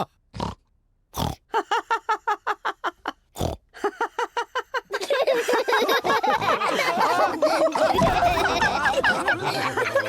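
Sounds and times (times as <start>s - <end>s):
cartoon pigs snorting: 0.3s - 0.6s, 1.2s - 1.4s, 3.4s - 3.6s
cartoon pigs laughing: 1.5s - 10.0s.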